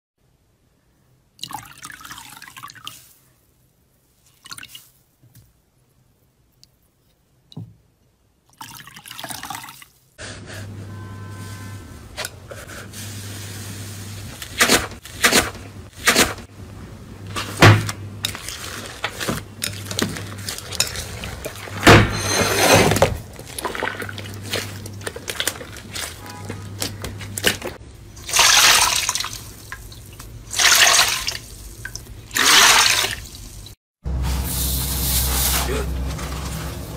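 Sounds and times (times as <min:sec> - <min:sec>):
slime squelching: 0:23.3 - 0:30.0.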